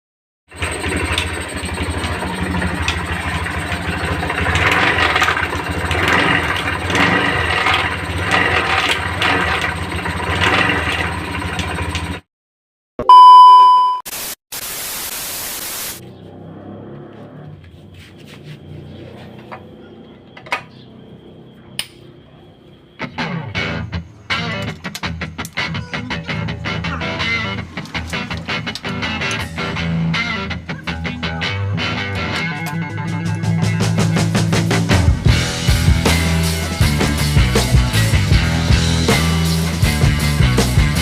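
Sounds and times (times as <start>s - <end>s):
scooter grinding noise: 0.5s - 12.2s, 16.0s - 21.1s, 25.0s - 41.0s
loud beep tone: 13.0s - 14.1s
static hiss: 14.1s - 16.0s.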